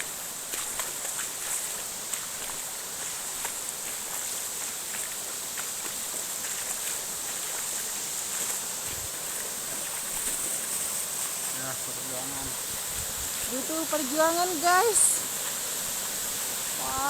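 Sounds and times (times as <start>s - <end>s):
waterfall rushing: 7.1s - 17.0s.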